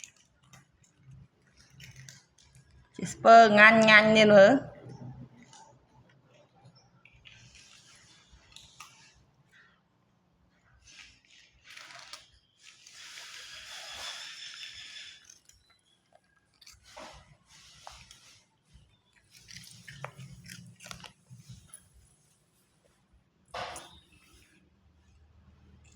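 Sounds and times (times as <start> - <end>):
person crunching and chewing snack: 7.1 - 9.0, 10.9 - 18.3, 19.0 - 21.8.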